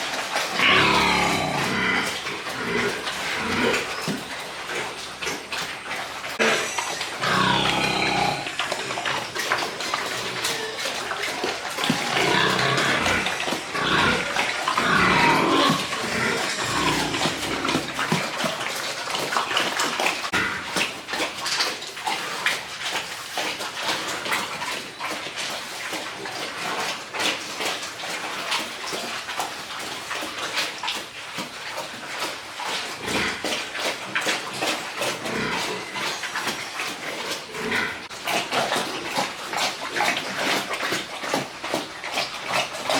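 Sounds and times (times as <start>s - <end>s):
piglets squealing and grunting: 0.4s - 19.3s, 34.2s - 42.9s.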